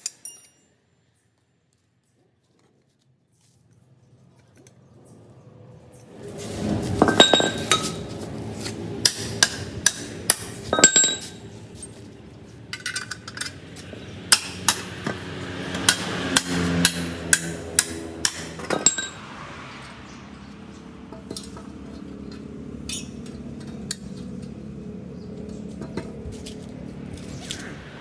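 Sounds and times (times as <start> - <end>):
metal tapping on steel parts: 0.0 - 0.7, 7.0 - 19.2, 21.0 - 27.8.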